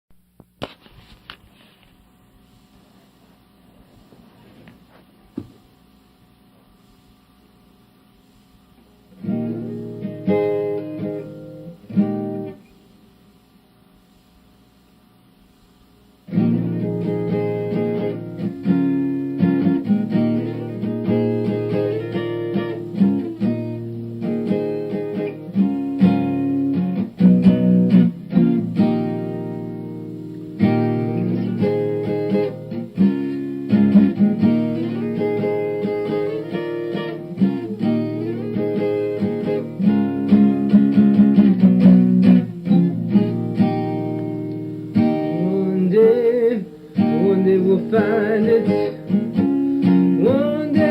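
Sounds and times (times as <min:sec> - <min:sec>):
acoustic guitar strumming chords: 0:09.1 - 0:12.8, 0:16.2 - 0:50.9.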